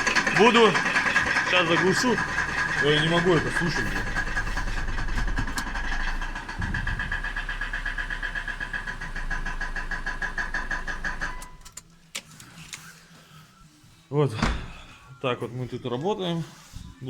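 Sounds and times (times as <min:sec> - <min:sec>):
rhythmic transmission knocking: 0:00.0 - 0:11.6
car engine idling: 0:00.0 - 0:11.7.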